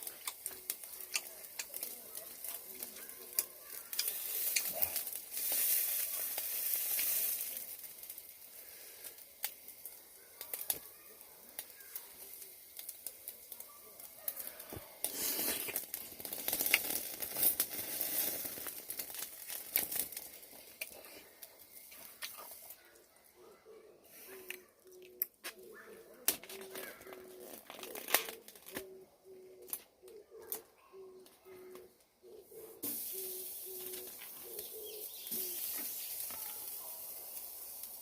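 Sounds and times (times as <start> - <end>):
food sizzling in a pan: 0.0 - 20.9, 32.8 - 38.0.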